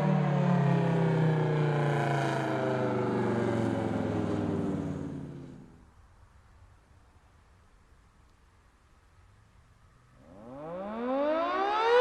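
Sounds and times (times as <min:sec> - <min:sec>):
three-tone siren winding down: 0:10.2 - 0:12.0.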